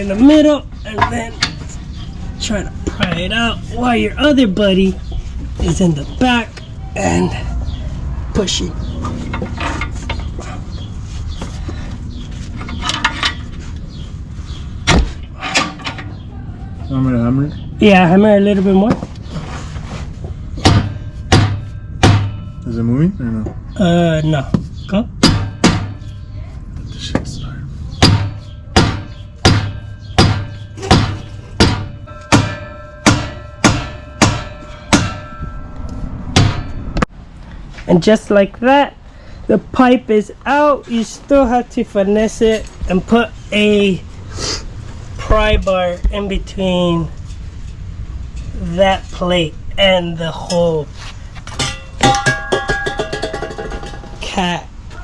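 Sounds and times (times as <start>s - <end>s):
metal clanks and scrapes: 0.9s - 3.3s, 8.9s - 16.2s, 28.0s - 37.1s, 47.2s - 48.7s, 50.4s - 54.3s
sharp knocks: 14.8s - 16.2s, 20.6s - 22.6s, 24.5s - 26.2s, 28.0s - 37.1s, 51.5s - 54.3s
mallet hammering on exhaust pipe: 20.6s - 22.6s, 25.2s - 26.1s, 28.0s - 35.7s, 36.3s - 37.0s, 51.6s - 54.2s
steady low rumble: 24.6s - 37.8s.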